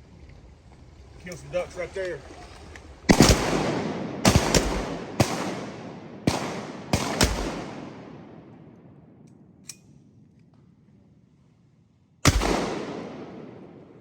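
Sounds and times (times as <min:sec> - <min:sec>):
shotgun shots: 0:03.1 - 0:08.9, 0:12.2 - 0:14.0
gunshot echo: 0:03.1 - 0:09.2, 0:12.2 - 0:14.0.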